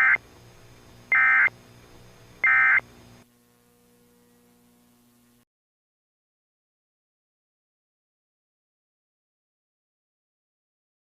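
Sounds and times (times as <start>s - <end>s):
faint hum: 0.0s - 5.4s.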